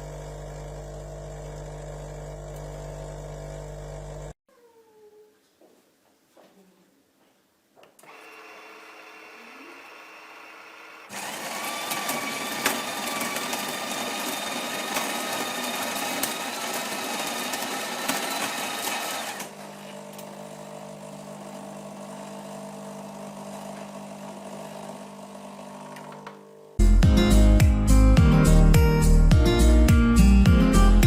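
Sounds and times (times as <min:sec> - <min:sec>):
coffee machine grinding: 0:00.0 - 0:04.3, 0:08.1 - 0:26.4.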